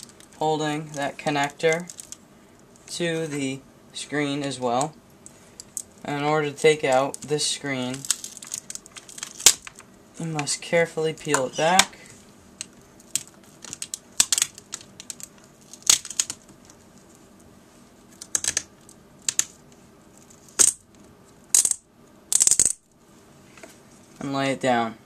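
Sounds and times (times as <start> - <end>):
laptop screen clicking and crackling: 12.6 - 16.8, 18.2 - 19.6.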